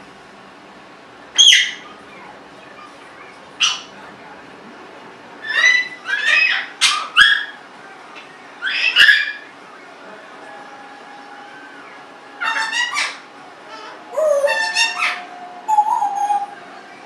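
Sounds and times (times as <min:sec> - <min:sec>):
parrot squawks and whistled calls: 0:01.4 - 0:01.9, 0:05.4 - 0:07.6, 0:08.6 - 0:09.5, 0:12.4 - 0:16.6.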